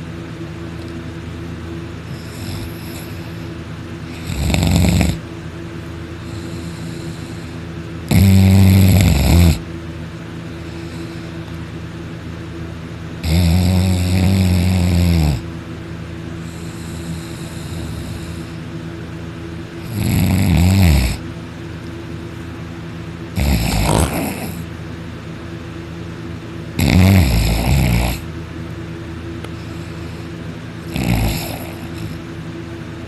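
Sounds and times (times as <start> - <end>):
person snoring loudly: 2.1 - 3.5, 4.1 - 5.2, 6.2 - 9.6, 13.2 - 15.5, 16.4 - 18.6, 19.8 - 21.2, 23.4 - 24.7, 26.8 - 28.3, 30.8 - 32.2.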